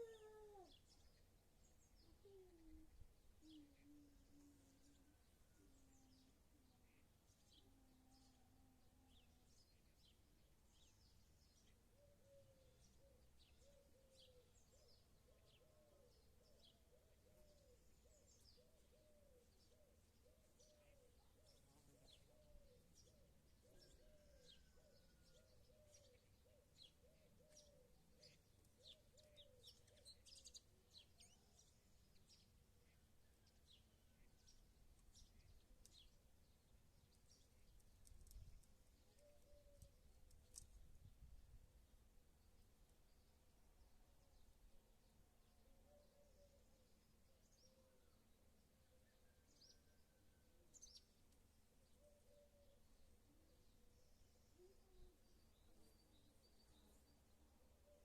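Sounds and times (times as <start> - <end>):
small birds chirping: 0.0 - 43.4.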